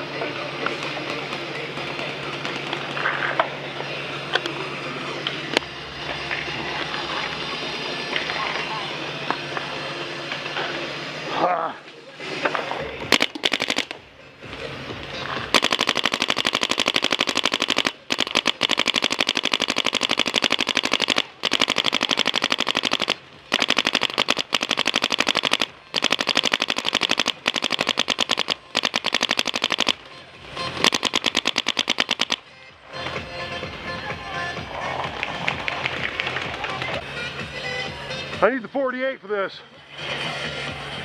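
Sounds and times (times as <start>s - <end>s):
paintball marker rapid firing: 13.1s - 14.0s, 15.4s - 32.4s.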